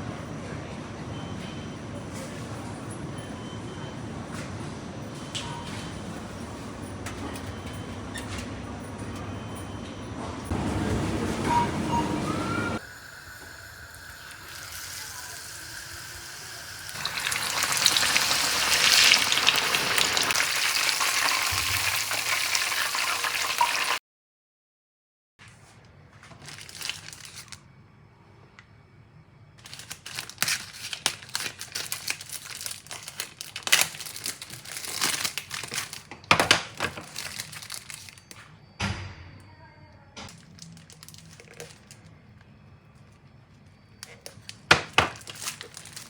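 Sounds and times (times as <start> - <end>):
chicken sizzling in hot oil: 12.8 - 24.0
crackling and crinkling: 25.6 - 27.7, 29.6 - 38.6, 40.3 - 46.0.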